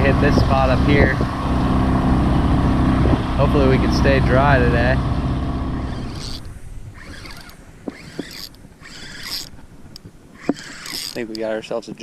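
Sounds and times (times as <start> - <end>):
outboard motor: 0.0 - 11.8
fishing gear clicking and scraping: 5.8 - 11.8.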